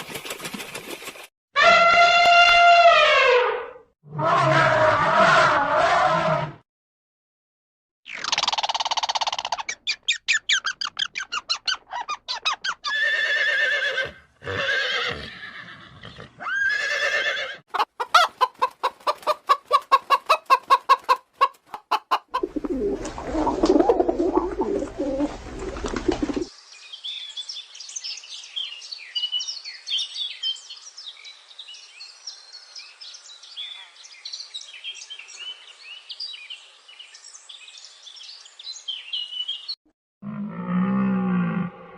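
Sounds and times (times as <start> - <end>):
sharp clicking calls: 8.1 - 12.8
high chirping: 8.2 - 12.8
low rough animal sound: 40.2 - 41.9.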